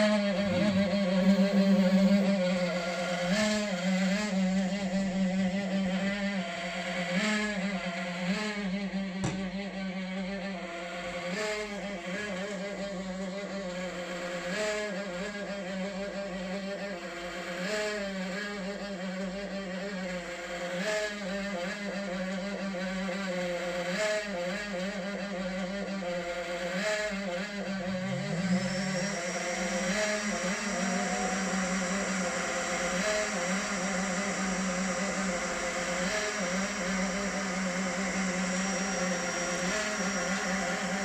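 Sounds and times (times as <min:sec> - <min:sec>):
rising tones: 0:00.0 - 0:05.0, 0:27.6 - 0:41.0
fan droning hum: 0:00.0 - 0:10.0, 0:27.1 - 0:41.0.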